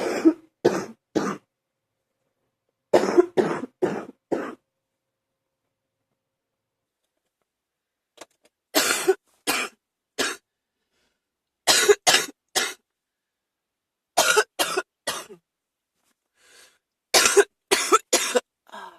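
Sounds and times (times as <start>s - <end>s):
person coughing: 0.0s - 1.5s, 3.0s - 4.6s, 8.8s - 10.4s, 11.7s - 12.8s, 14.2s - 15.4s, 17.2s - 18.5s.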